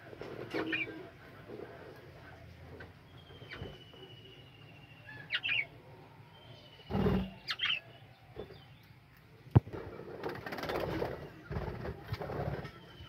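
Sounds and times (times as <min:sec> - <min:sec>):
long thin whistles: 0:03.1 - 0:05.0, 0:12.6 - 0:13.0
budgerigars chirping: 0:05.1 - 0:05.7, 0:07.0 - 0:07.8.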